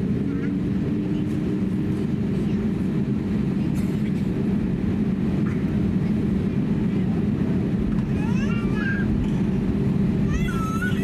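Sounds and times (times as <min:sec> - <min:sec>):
airplane cabin drone: 0:00.0 - 0:11.0.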